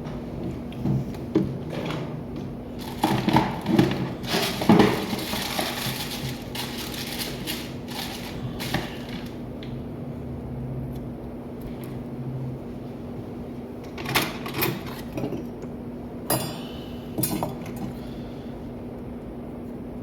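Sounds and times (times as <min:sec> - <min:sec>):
steady low hum: 0:00.0 - 0:20.0.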